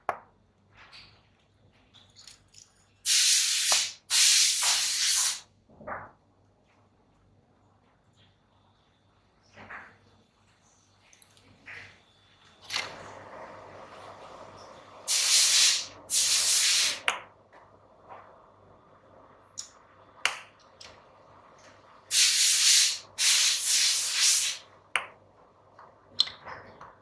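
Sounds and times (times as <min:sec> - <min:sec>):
hissing air bursts: 0:03.1 - 0:05.4, 0:15.1 - 0:17.1, 0:22.1 - 0:24.7.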